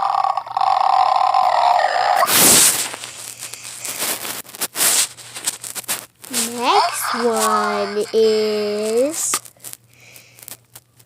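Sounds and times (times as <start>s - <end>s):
crackling rustling noises: 2.2s - 11.0s
speaker buzzy tone: 6.3s - 9.4s.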